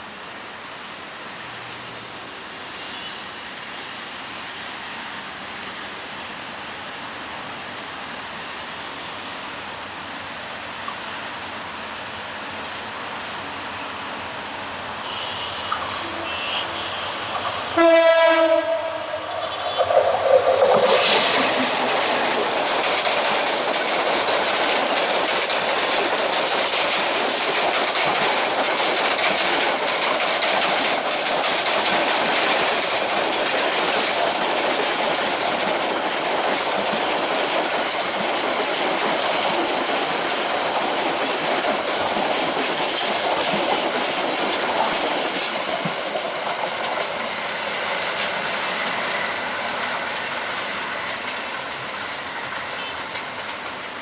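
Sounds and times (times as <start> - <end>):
train horn blast: 15.0 - 19.8
wheels clattering on rails: 19.5 - 54.0.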